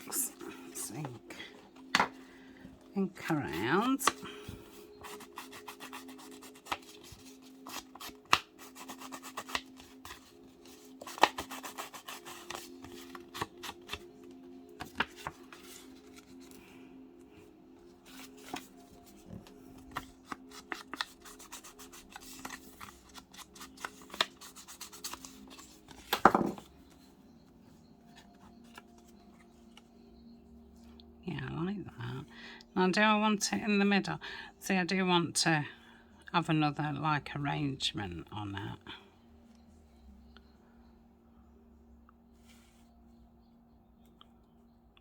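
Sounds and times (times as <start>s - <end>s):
paper rustling and scraping: 3.3s - 14.1s, 14.7s - 16.7s, 18.0s - 27.1s.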